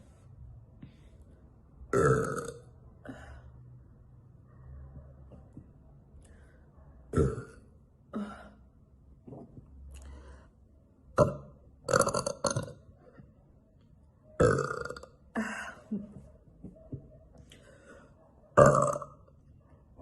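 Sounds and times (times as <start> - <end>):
woman belching: 1.9 - 2.7, 7.1 - 7.6, 11.2 - 12.8, 14.4 - 15.5, 18.6 - 19.2.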